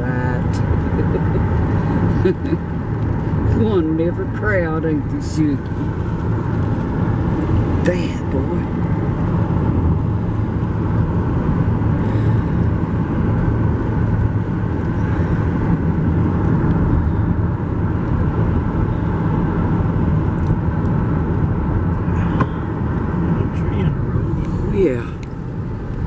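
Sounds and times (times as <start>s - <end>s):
car engine and road noise: 0.0s - 26.0s.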